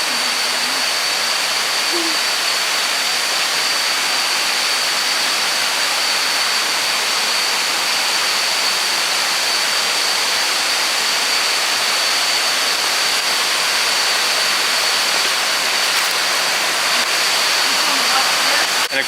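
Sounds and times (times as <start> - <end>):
falling water rushing: 0.0 - 5.9, 12.7 - 18.9
high-pitched whine: 0.0 - 19.0.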